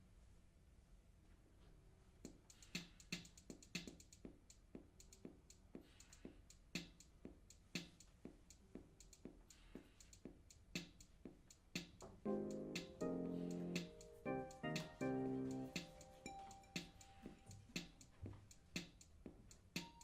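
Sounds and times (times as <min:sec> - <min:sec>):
electronic drum loop: 0:02.3 - 0:20.0.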